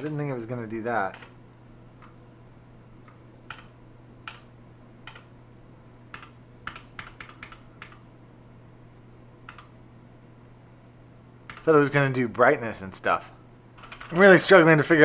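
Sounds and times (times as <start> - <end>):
faint low hum: 0.0 - 15.0
mechanical keyboard key presses: 6.2 - 8.0.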